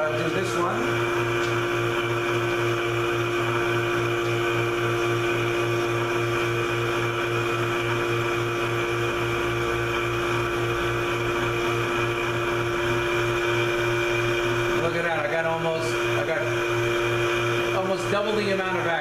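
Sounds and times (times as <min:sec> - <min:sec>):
pulsing vacuum pump hum: 0:00.0 - 0:19.0.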